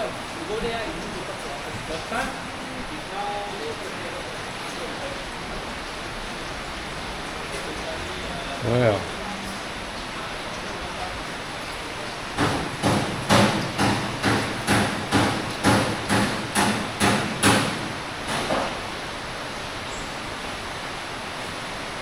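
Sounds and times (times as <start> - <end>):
hammer blows: 12.4 - 18.8.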